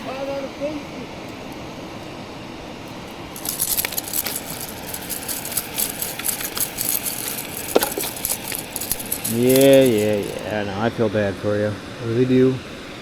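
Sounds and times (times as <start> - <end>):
metal rattling and clicking: 3.4 - 10.5.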